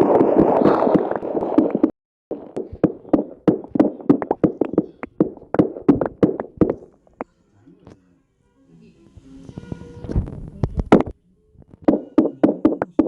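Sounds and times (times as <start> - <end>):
sharp taps and knocks: 0.0 - 7.2, 11.9 - 13.0.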